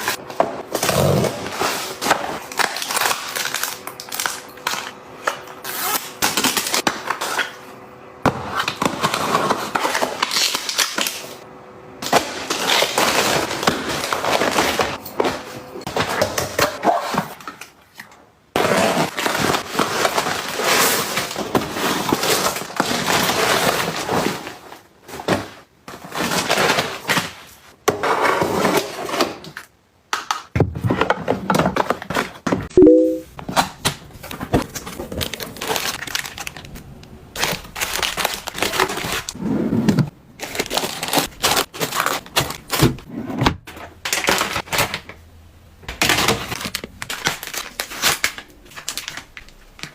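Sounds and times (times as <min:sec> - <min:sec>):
items knocking and clattering: 0:30.4 - 0:32.8
packaging crinkling: 0:34.2 - 0:39.4, 0:40.4 - 0:42.8, 0:46.0 - 0:49.9.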